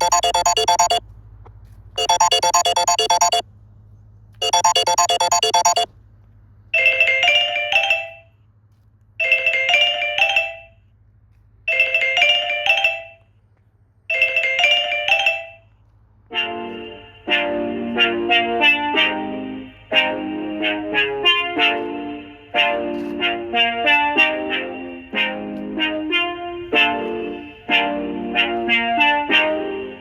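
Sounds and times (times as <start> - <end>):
buzzy rapid-note tone: 0.0 - 1.0, 2.0 - 3.4, 4.4 - 5.8.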